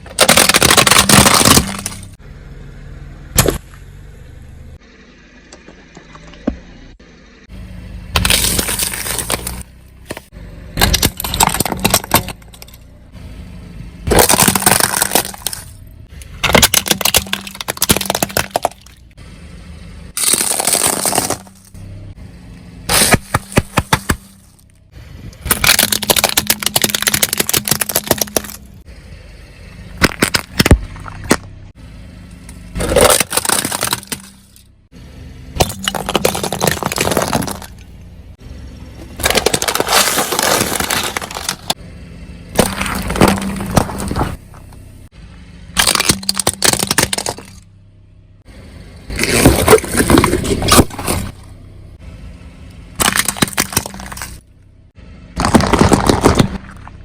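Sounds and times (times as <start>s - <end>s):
objects crunching under car tyres: 0.0s - 2.2s, 8.1s - 13.1s, 14.0s - 19.2s, 20.1s - 28.8s, 29.8s - 34.8s, 35.5s - 41.8s, 42.5s - 47.7s, 48.9s - 52.0s, 52.9s - 54.7s, 55.3s - 57.0s.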